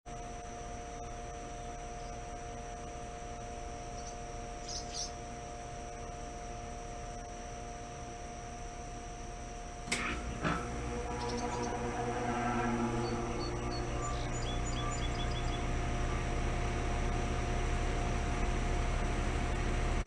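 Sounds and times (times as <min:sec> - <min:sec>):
air conditioner hum: 0:01.1 - 0:20.0
steady tones: 0:09.9 - 0:18.4.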